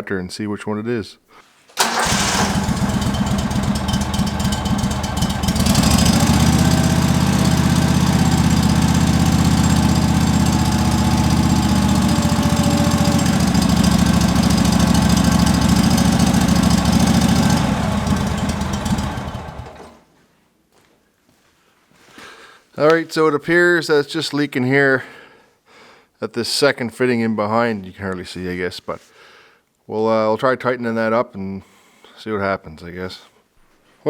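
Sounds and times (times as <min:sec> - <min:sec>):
tractor engine running: 0:01.8 - 0:20.0.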